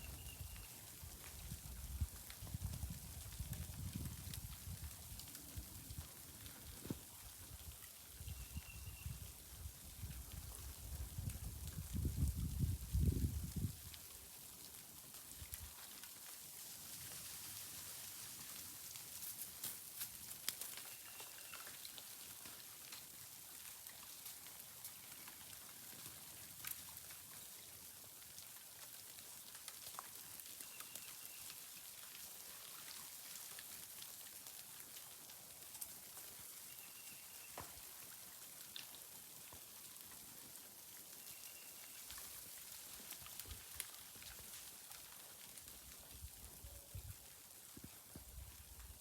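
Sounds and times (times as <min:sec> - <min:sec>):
soft steady hiss: 0:00.0 - 0:49.0
meltwater dripping: 0:13.8 - 0:46.4.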